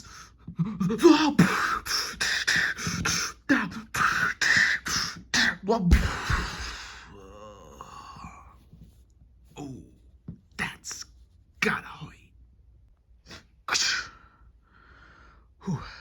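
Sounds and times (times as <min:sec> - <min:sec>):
heavy low thud: 0:05.9 - 0:07.0.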